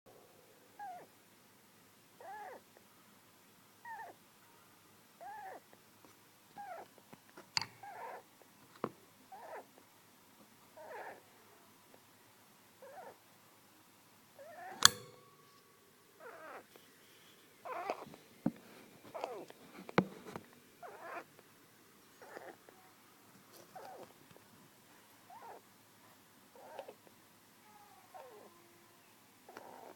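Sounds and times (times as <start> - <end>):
hamster squeaky snoring: 0.8 - 1.1, 2.2 - 2.7, 3.8 - 4.2, 5.2 - 5.6, 6.6 - 6.9, 7.8 - 8.2, 9.3 - 9.7, 10.8 - 11.2, 12.8 - 13.2, 16.2 - 16.6, 17.7 - 18.1, 20.8 - 21.3, 22.2 - 22.6, 23.7 - 24.0, 25.3 - 25.6, 26.6 - 27.0, 28.1 - 28.6, 29.5 - 29.9.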